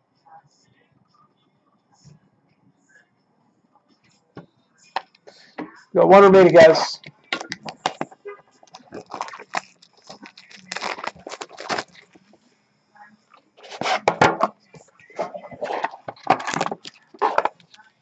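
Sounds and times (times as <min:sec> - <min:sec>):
packaging crinkling and tearing: 0:08.7 - 0:12.2, 0:16.2 - 0:17.7.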